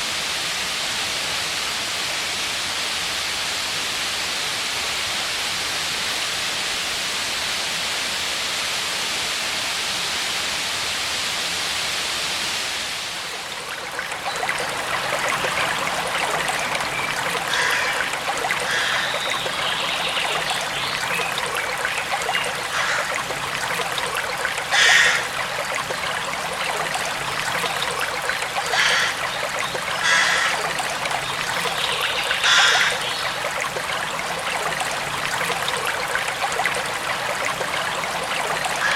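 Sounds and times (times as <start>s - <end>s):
falling water rushing: 0.0s - 38.9s
stream gurgling and trickling: 0.0s - 38.9s
water splashes: 12.6s - 38.9s.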